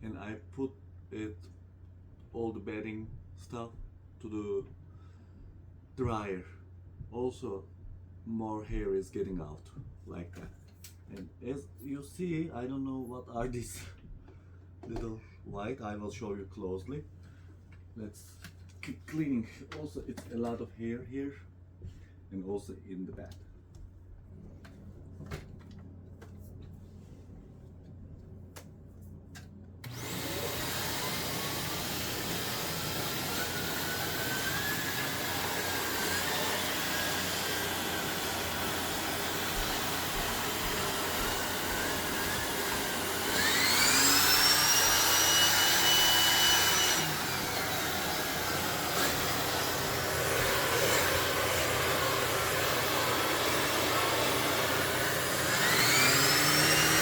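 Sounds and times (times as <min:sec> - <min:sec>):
vacuum cleaner motor whine: 0:29.8 - 0:57.0.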